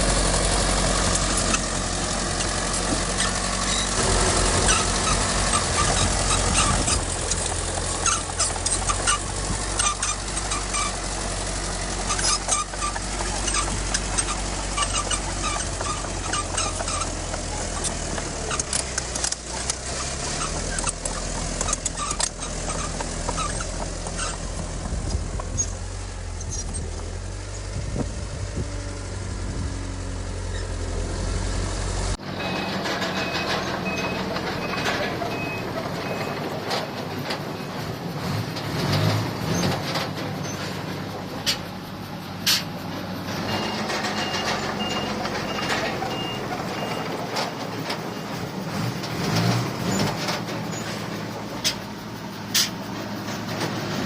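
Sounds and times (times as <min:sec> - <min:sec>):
diesel machinery rumbling: 0:00.0 - 0:54.0
metallic clanks: 0:01.0 - 0:27.7, 0:32.2 - 0:54.0
reversing alarm beeps: 0:43.5 - 0:47.1.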